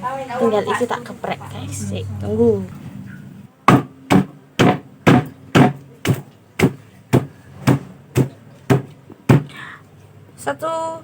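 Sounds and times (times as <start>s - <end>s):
roots being pounded: 3.7s - 9.5s.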